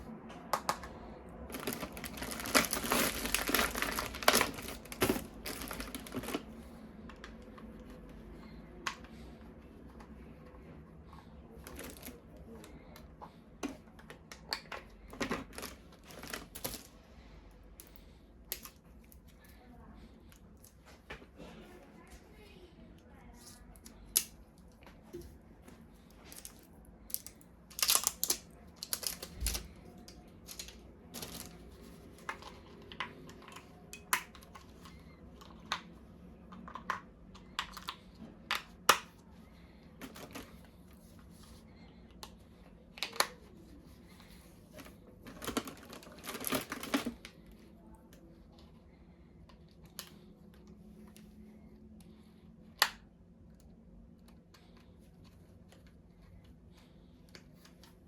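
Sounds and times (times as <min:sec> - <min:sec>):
packaging rustling: 0:01.4 - 0:06.7, 0:11.6 - 0:12.2, 0:15.0 - 0:17.0, 0:26.3 - 0:32.9, 0:40.0 - 0:41.5, 0:44.2 - 0:47.3.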